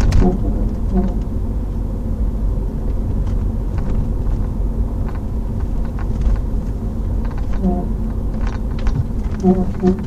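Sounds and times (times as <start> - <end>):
road and engine rumble: 0.0 - 10.0
faint creaks and rattles: 2.9 - 10.0.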